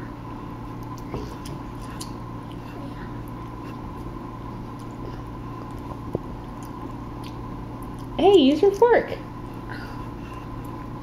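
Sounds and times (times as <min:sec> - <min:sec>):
steady room hum: 0:00.0 - 0:11.0
child eating wet noodles: 0:00.7 - 0:08.2, 0:09.2 - 0:11.0.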